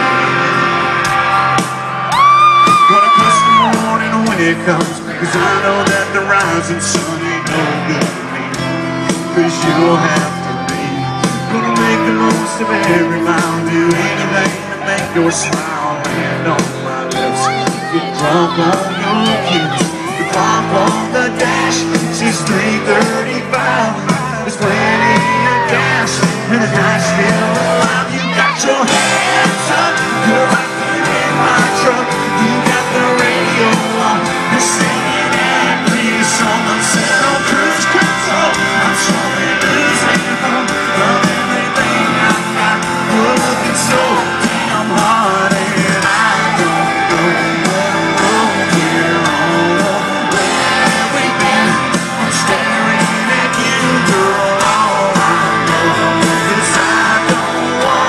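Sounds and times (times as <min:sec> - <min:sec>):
live country rock band: 0:00.0 - 0:58.0
person singing: 0:00.0 - 0:58.0
person shouting: 0:17.2 - 0:20.6, 0:27.0 - 0:28.8.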